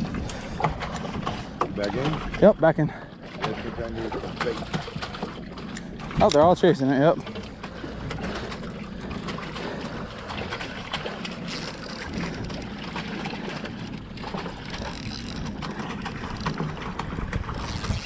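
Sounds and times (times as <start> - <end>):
wind on microphone: 0.0 - 1.3, 16.1 - 18.0
water against hull: 0.0 - 18.0.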